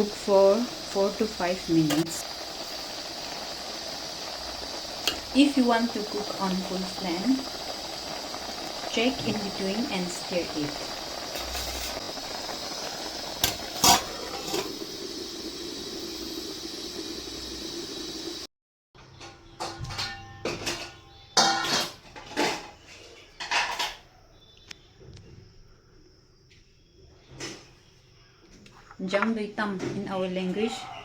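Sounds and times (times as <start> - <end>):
pot boiling with a hiss: 0.0 - 18.5, 20.0 - 24.6, 29.6 - 31.0
dishes and utensils clinking: 19.1 - 24.0.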